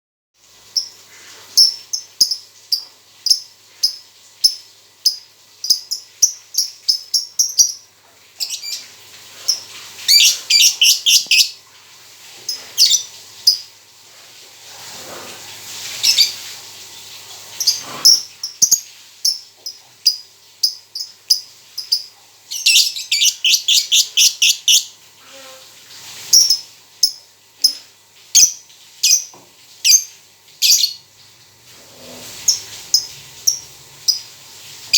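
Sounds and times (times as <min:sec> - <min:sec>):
songbird rattling trills: 0:01.6 - 0:07.8, 0:09.5 - 0:11.6, 0:17.6 - 0:24.9
songbird chirping: 0:01.6 - 0:08.9, 0:09.5 - 0:11.6, 0:20.1 - 0:24.9.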